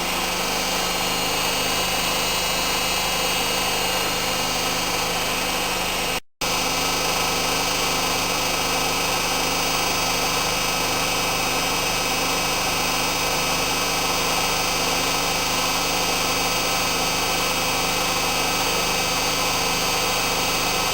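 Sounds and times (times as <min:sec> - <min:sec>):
washing machine spinning: 0:00.0 - 0:16.6.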